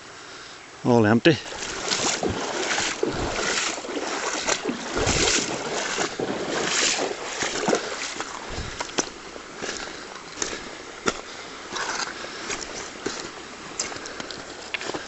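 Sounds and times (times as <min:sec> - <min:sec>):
river water rushing: 0:01.3 - 0:15.0
wind buffeting microphone: 0:01.5 - 0:11.1
deep thumps: 0:01.5 - 0:11.2.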